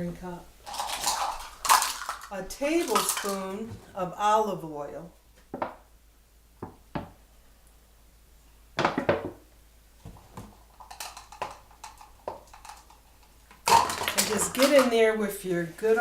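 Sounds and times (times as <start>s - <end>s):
kitchen utensils clattering: 0.7s - 3.6s, 13.6s - 15.0s.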